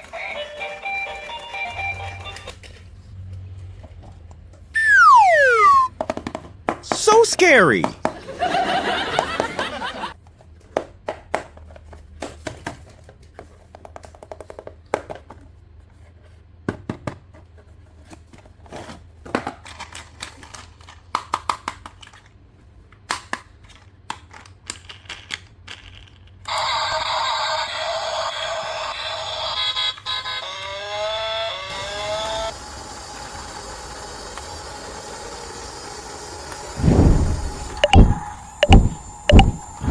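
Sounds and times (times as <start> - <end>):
electronic steady tones: 4.8 - 5.9, 36.8 - 39.9
plastic toys clicking and rustling: 19.2 - 22.4, 23.0 - 26.5.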